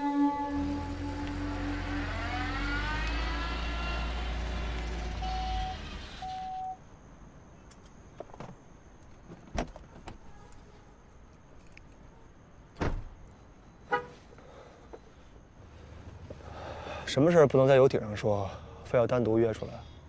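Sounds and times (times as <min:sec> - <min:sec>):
short beeps: 0:05.2 - 0:06.8.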